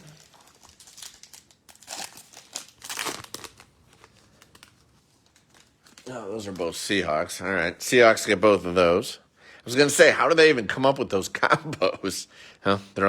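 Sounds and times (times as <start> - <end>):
wrapper crinkling and tearing: 0.0 - 6.8.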